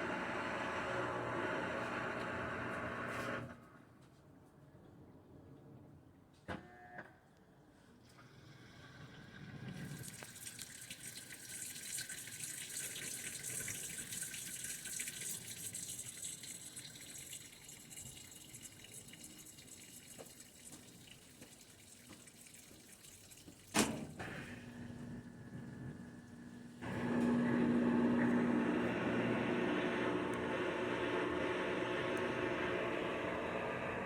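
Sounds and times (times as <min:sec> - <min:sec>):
washing machine taking in water: 0:09.0 - 0:34.0.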